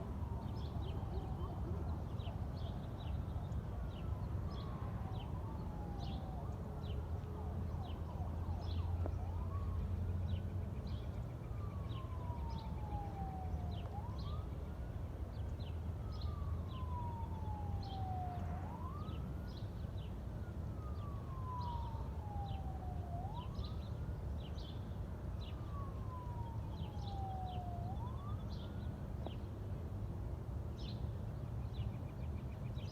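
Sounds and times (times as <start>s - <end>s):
emergency siren wailing: 0.0s - 32.8s.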